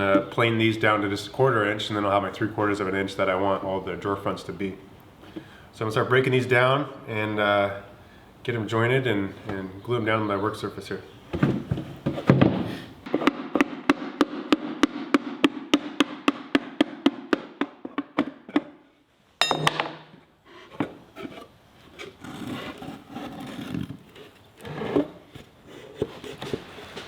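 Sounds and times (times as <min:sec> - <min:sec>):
loud knock with high ring: 0:19.4 - 0:20.1
scraping and handling of boards: 0:20.5 - 0:27.0.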